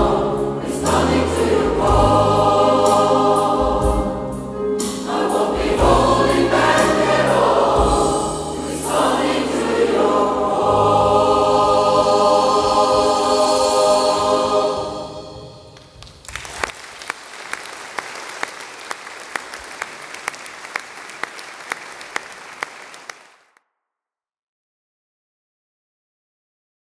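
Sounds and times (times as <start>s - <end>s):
gospel choir singing: 0.0s - 15.6s
audience applause: 15.9s - 23.5s.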